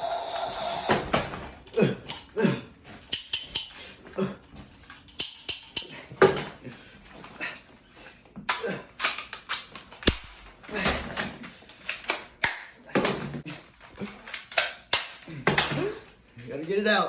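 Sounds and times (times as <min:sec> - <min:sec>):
short grunts: 0:00.8 - 0:03.0, 0:03.9 - 0:04.6, 0:05.8 - 0:09.0
airsoft guns firing: 0:10.0 - 0:10.5.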